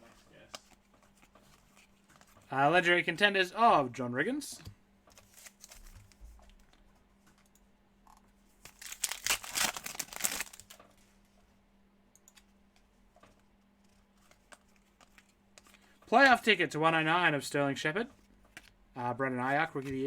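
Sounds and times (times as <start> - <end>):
cards rustling and clicking: 5.1 - 7.5, 8.6 - 10.9, 13.2 - 16.4
wrapper crinkling and tearing: 8.6 - 10.8.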